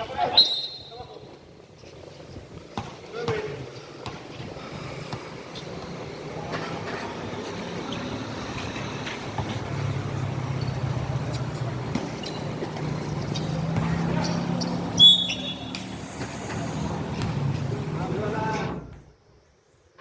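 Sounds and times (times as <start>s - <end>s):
shrill whistle blast: 0.3s - 1.1s, 14.9s - 16.1s
low crowd rumble: 4.4s - 15.0s, 16.1s - 19.0s.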